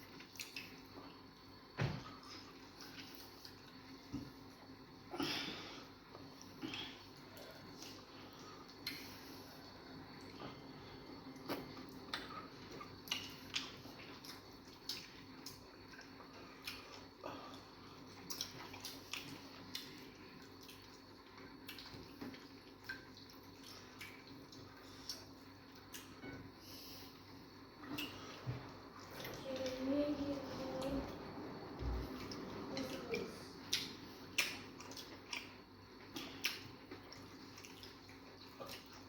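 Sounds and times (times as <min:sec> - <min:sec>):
wet chewing and lip smacks: 0:00.1 - 0:00.9, 0:11.2 - 0:17.1, 0:18.1 - 0:26.2, 0:33.6 - 0:39.0.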